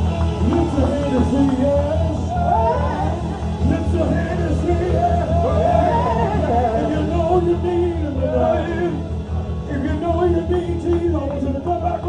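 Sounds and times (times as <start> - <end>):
instrumental accompaniment with bass: 0.0 - 12.0
man singing gospel: 0.0 - 12.0.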